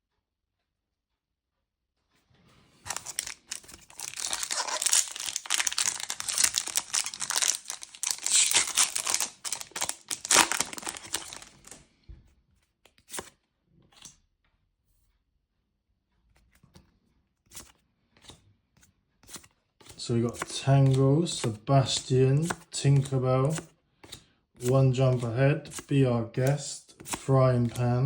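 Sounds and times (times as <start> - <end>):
wrapper tearing and crinkling: 2.9 - 11.8.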